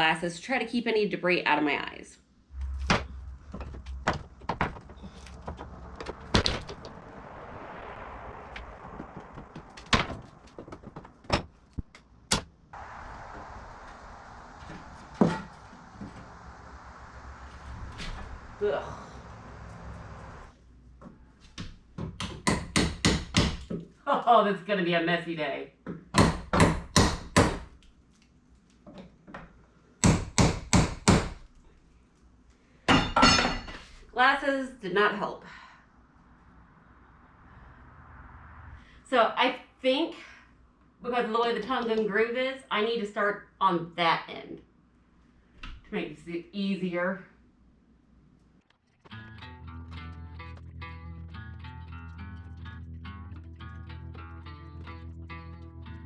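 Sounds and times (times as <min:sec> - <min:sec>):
steady hiss: 0:12.7 - 0:20.5
hammer blows on wooden boards: 0:22.1 - 0:23.7, 0:26.1 - 0:27.7, 0:30.0 - 0:31.4.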